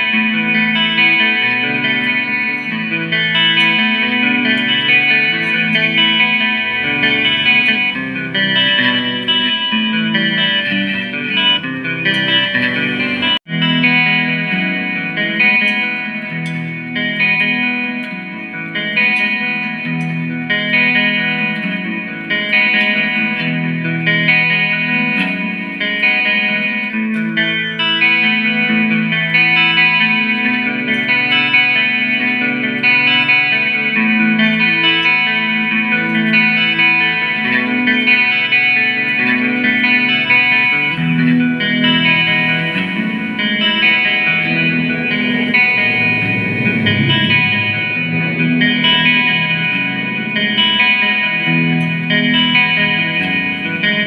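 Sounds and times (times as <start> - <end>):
guitar music: 0.0 - 54.0
sustained pitched instrumental notes: 1.5 - 13.4, 36.1 - 54.0.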